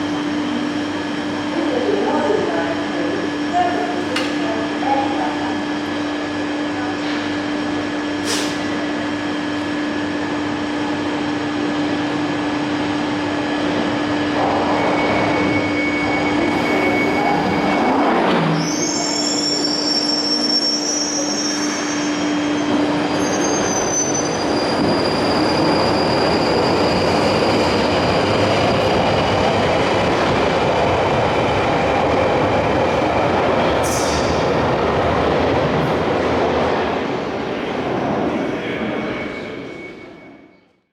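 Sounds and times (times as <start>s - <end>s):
train wheels squealing: 14.6s - 29.2s, 38.6s - 40.8s
train wheels rumbling on track: 21.1s - 39.8s.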